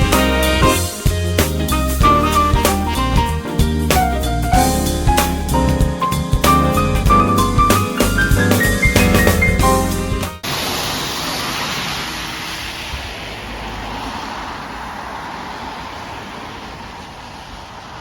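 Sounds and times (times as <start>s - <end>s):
piano and drums music: 0.0s - 10.4s
moving city bus rushing: 0.0s - 18.0s.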